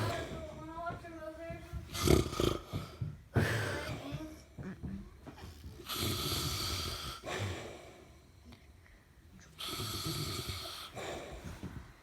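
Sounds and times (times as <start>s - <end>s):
quiet breathing: 0.0s - 12.0s
man snoring: 1.9s - 2.8s, 5.8s - 7.6s, 9.6s - 11.0s.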